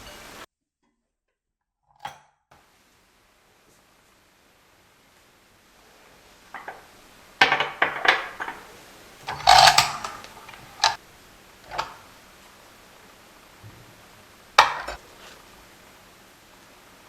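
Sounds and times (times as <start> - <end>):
utensils and dishes clattering: 0.0 - 0.4, 6.6 - 11.0, 11.7 - 12.1, 14.6 - 15.4.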